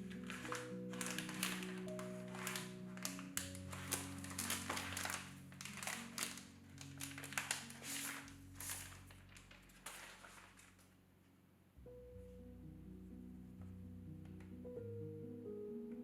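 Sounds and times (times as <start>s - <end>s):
packaging crinkling and tapping: 0.0s - 10.9s
soft background music: 0.0s - 16.0s.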